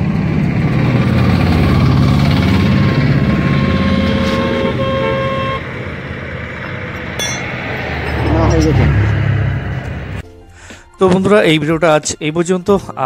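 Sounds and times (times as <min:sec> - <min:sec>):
road traffic: 0:00.0 - 0:10.9
car horn sounding: 0:02.9 - 0:05.9.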